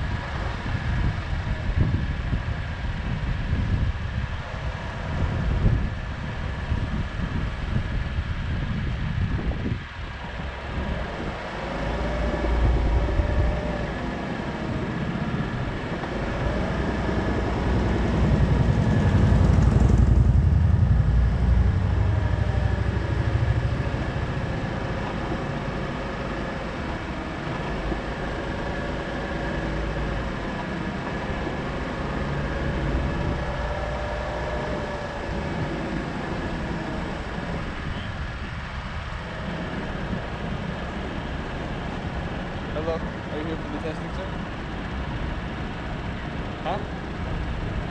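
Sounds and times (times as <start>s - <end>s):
car engine and road rumble: 0.0s - 47.9s
faint steady hum: 0.0s - 47.9s.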